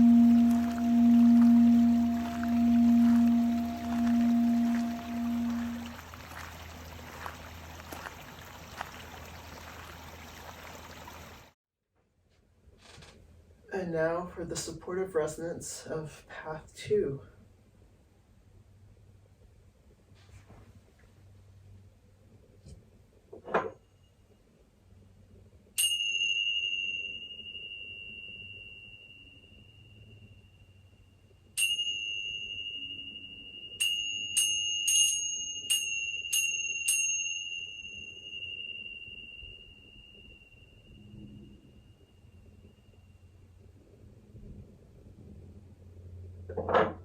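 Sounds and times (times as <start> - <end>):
singing bowl ringing: 0.0 - 8.1, 25.8 - 43.8
water trickling and dripping: 0.0 - 11.6.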